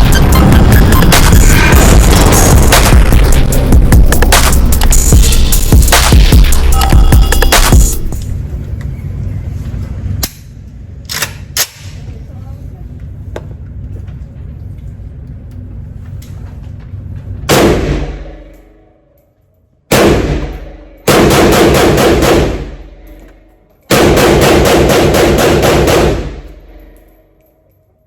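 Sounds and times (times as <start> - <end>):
low steady rumble: 0.0 - 27.8
pistol gunshots: 17.5 - 18.5, 19.9 - 23.0, 23.9 - 26.7.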